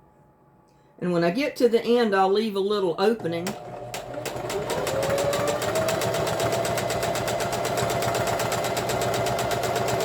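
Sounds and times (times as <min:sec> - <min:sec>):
sewing machine motor whine: 0:03.4 - 0:10.0.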